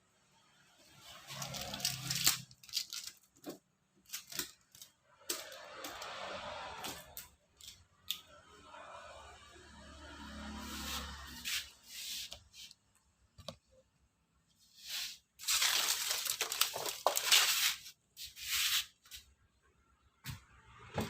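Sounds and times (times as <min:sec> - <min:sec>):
rustling scraping handling noise: 0:01.0 - 0:06.2, 0:10.7 - 0:12.8, 0:14.6 - 0:19.3.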